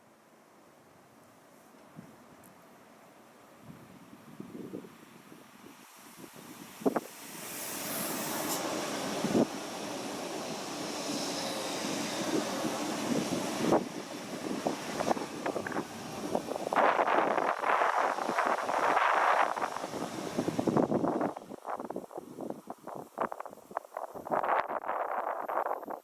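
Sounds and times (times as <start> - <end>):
train passing on tracks: 2.8 - 26.0
wind buffeting microphone: 12.3 - 26.0.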